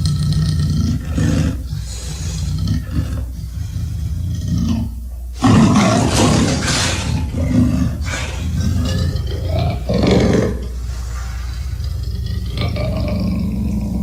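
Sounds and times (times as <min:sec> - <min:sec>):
monster roar: 0:05.4 - 0:10.7.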